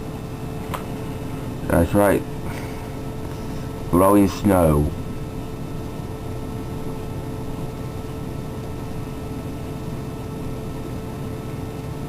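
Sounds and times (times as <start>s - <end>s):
faint constant tone: 0.0s - 12.0s
mechanical hum and hiss: 0.0s - 12.0s.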